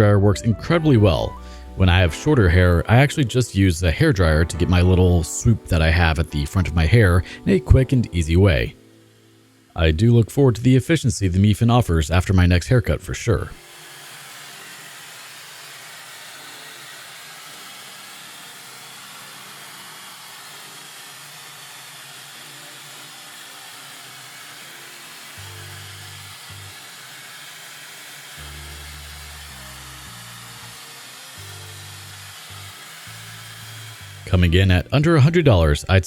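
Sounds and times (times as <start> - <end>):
background music bass notes: 0.0 - 9.0, 9.7 - 13.6, 34.0 - 36.0
hair dryer blowing: 7.2 - 10.2, 13.6 - 34.8.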